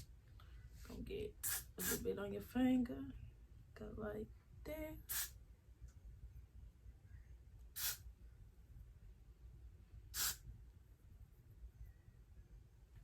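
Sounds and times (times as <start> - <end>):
spray bottle hissing: 1.4 - 2.0, 5.1 - 5.4, 7.8 - 8.1, 10.2 - 10.4.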